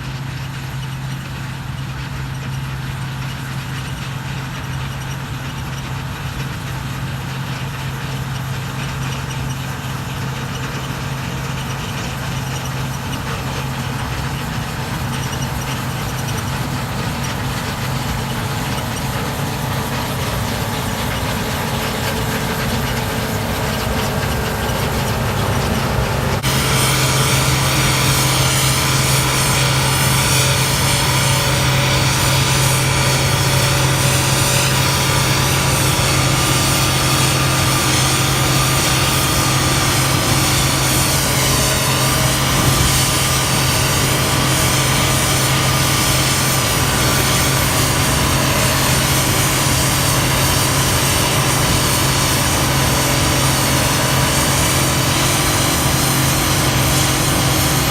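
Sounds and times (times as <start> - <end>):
dense mechanical whir: 0.0 - 57.9
farm machinery engine drone: 0.0 - 57.9.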